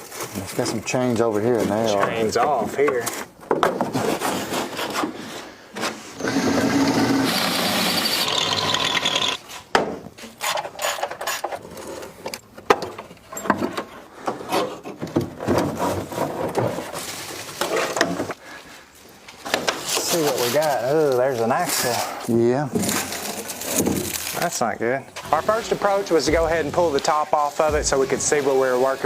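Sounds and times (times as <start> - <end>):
irregular knocks and clatters: 22.7 - 24.4, 27.6 - 28.4.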